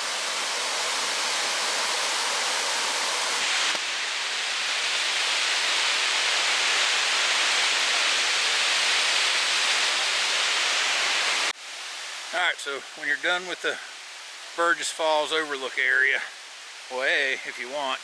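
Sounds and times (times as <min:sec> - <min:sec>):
large waterfall rushing: 0:00.0 - 0:14.4.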